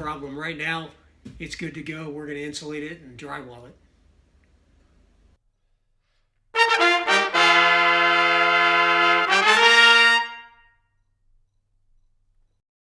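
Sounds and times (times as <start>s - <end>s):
brass fanfare: 6.6s - 10.7s.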